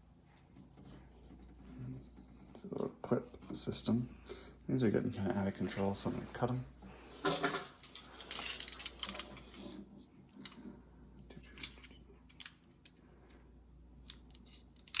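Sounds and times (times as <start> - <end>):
handling rattle: 7.2 - 9.8.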